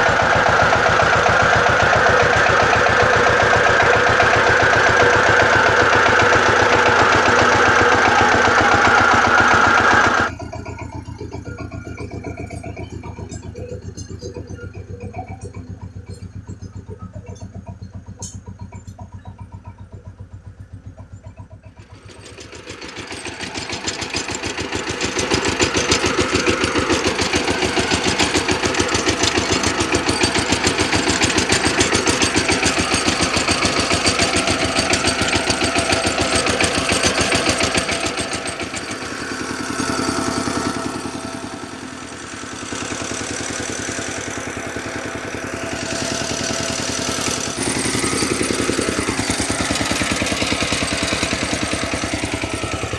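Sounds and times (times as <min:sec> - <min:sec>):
ploughing machine engine throbbing: 0:00.0 - 0:52.9.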